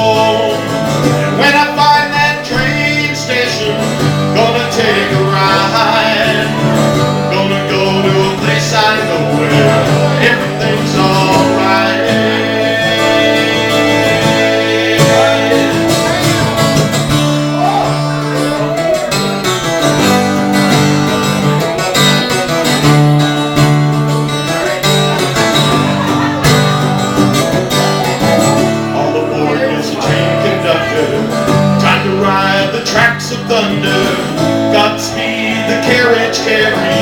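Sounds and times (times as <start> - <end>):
person singing: 0.0 - 16.8, 24.5 - 37.0
band playing led by guitar: 0.0 - 37.0.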